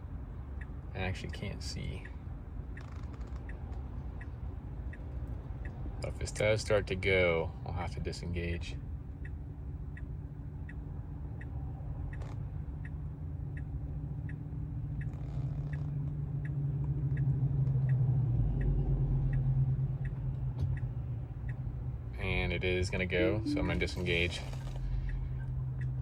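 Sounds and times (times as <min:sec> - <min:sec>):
turn signal ticking: 0:00.0 - 0:26.0
low in-cabin hum: 0:21.5 - 0:25.6.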